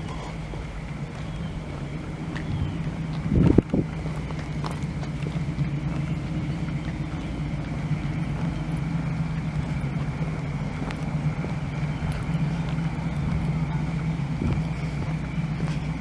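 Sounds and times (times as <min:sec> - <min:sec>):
vehicle engine hum: 0:00.0 - 0:16.0.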